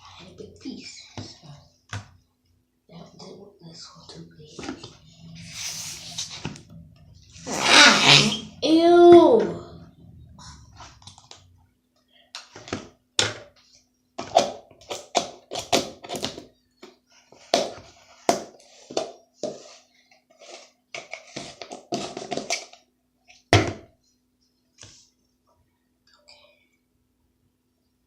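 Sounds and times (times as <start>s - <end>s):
faint steady hum: 0.0s - 14.2s.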